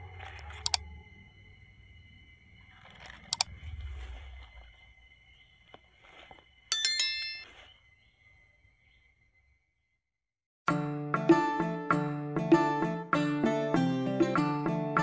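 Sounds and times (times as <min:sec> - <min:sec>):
sharp clicks: 0:00.6 - 0:00.8
bell-like ding: 0:06.7 - 0:07.5.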